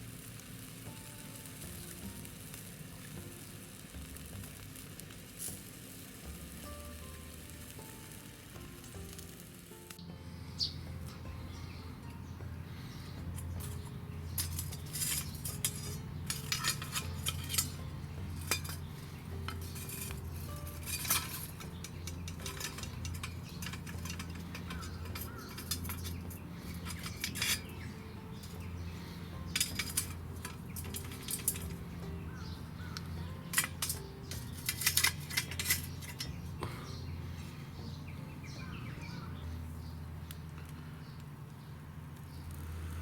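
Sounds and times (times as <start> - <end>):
steady low hum: 6.2 - 41.5
metal cookware clinking and scraping: 13.3 - 36.7.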